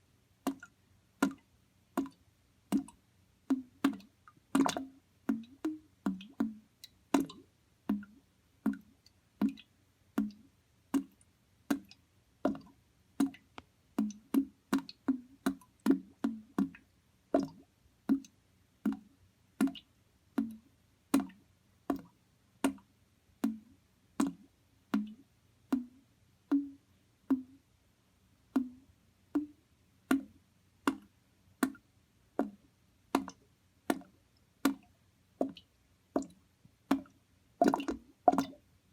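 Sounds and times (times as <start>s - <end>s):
water bubbling and plopping: 3.5s - 6.6s, 33.2s - 34.8s, 35.4s - 38.6s.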